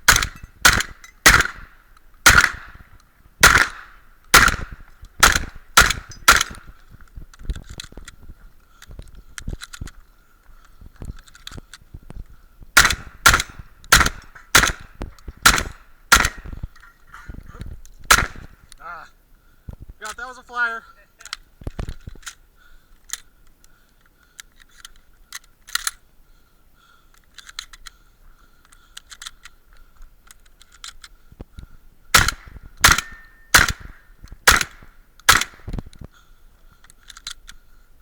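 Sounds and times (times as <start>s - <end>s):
shotgun shots: 0.0s - 6.7s, 12.8s - 16.6s, 18.1s - 18.6s, 32.1s - 35.8s.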